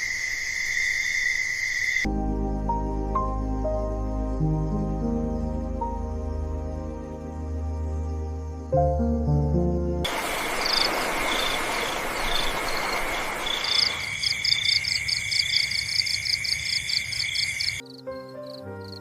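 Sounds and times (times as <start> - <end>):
insects chirping: 0.0 - 19.0
music: 2.1 - 10.1, 17.8 - 19.0.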